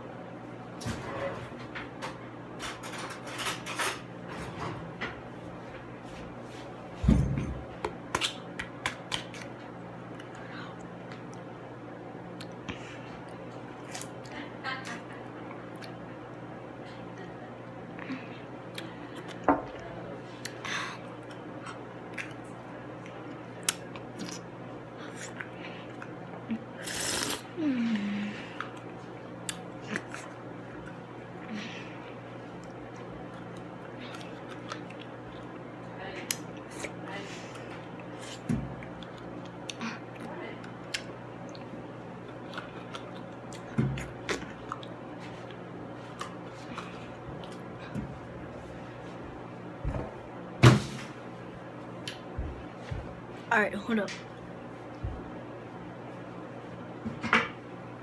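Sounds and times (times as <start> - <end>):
steady low hum: 0.0 - 58.0
crackling chew: 20.4 - 27.5, 28.5 - 47.7.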